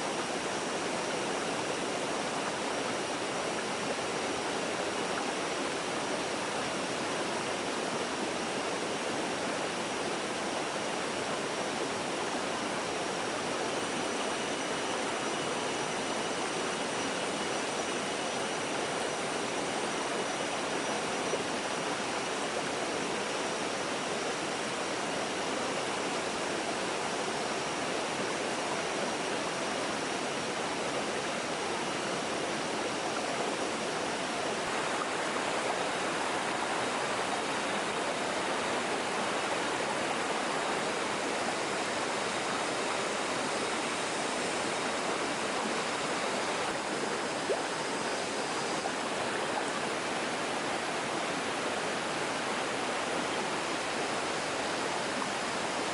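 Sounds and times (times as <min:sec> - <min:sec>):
stream rushing: 0:00.0 - 0:55.9.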